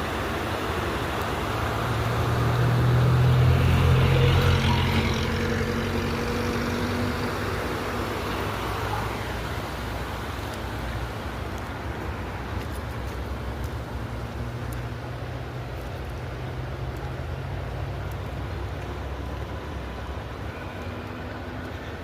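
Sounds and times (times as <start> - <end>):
river water rushing: 0.0 - 22.0
vehicle engine passing by: 1.7 - 8.2.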